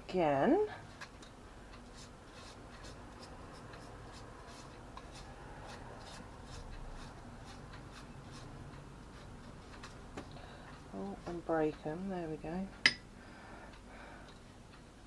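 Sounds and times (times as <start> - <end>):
basting brush strokes: 1.9 - 10.0.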